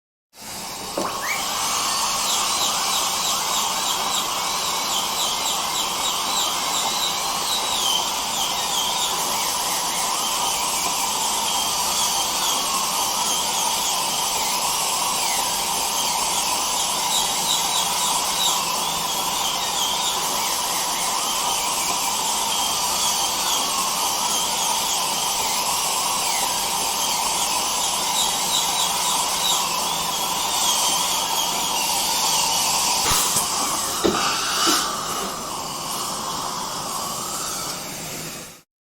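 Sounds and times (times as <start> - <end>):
dental drill whining: 0.4 - 38.7
dental suction hiss: 29.5 - 38.1.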